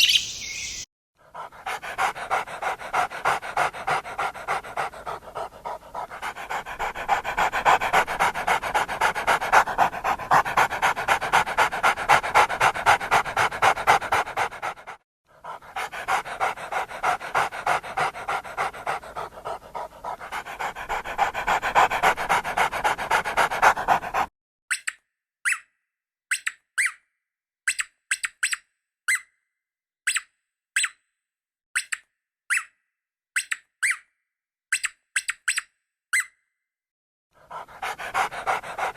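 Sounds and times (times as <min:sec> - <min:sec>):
dog panting: 0:01.2 - 0:24.3, 0:37.4 - 0:38.9.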